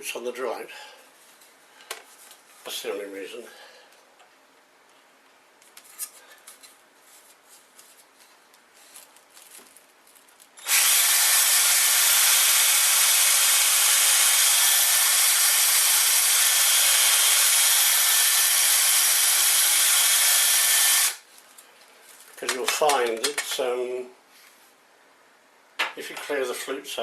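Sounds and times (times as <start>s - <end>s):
electric drill boring wood: 10.6s - 21.2s.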